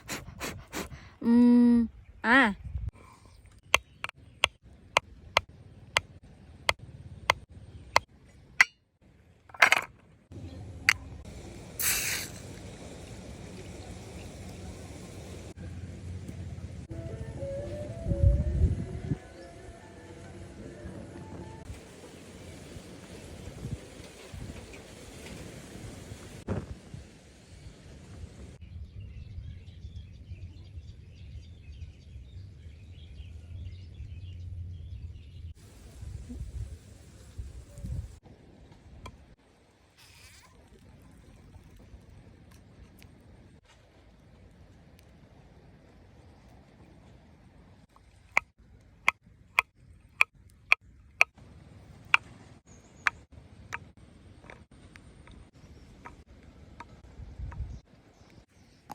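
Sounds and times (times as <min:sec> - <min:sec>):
birds chirping: 0:02.0 - 0:06.5.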